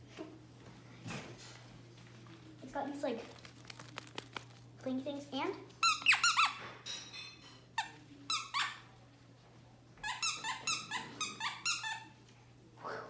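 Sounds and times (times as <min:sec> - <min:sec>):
dog toy squeaking: 0:05.8 - 0:06.7, 0:07.8 - 0:08.8, 0:10.0 - 0:12.2.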